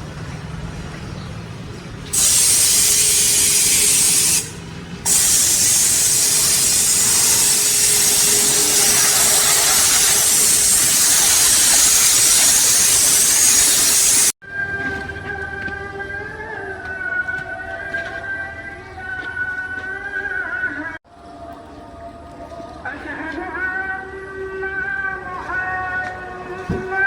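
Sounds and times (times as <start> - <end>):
pressure washer spraying: 2.1 - 14.4.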